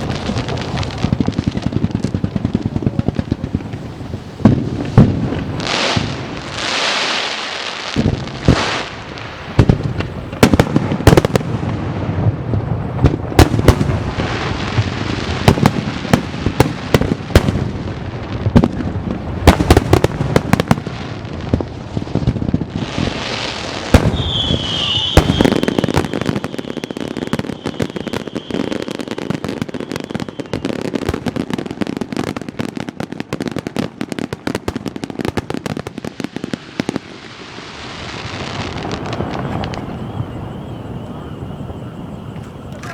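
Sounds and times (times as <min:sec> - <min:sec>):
fireworks hissing: 0:00.0 - 0:32.8, 0:36.0 - 0:42.9
fireworks bangs: 0:00.0 - 0:42.9
high whistle: 0:24.0 - 0:30.8, 0:39.0 - 0:42.9.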